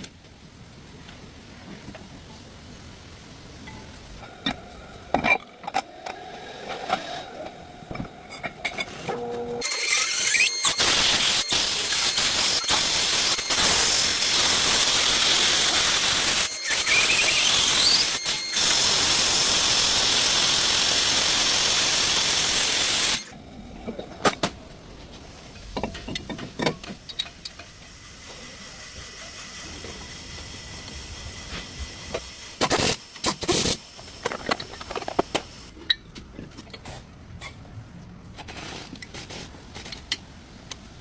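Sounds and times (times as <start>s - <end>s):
pressurised jet hissing: 10.7s - 23.3s.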